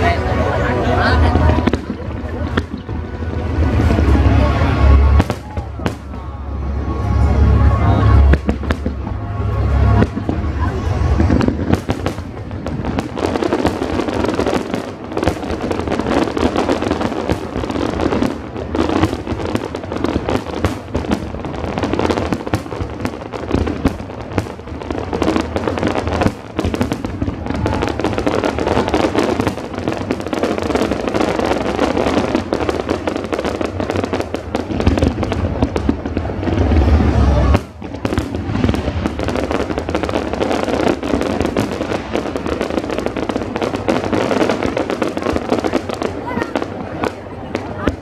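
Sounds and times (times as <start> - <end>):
music: 0.0 - 12.1
fireworks bangs and crackle: 0.0 - 48.0.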